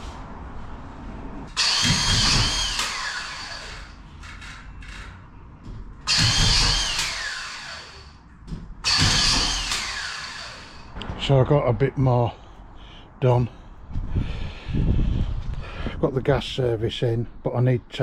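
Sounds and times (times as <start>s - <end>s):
power drill whining: 1.5s - 4.0s, 6.0s - 8.2s, 8.8s - 10.9s.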